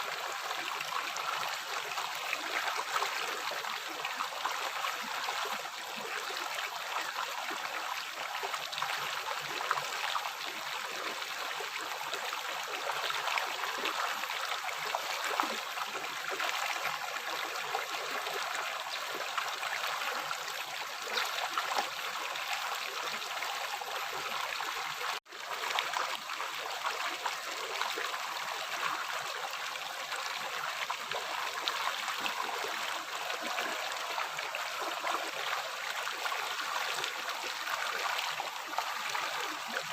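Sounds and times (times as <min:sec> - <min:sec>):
river flowing: 0:13.0 - 0:39.9.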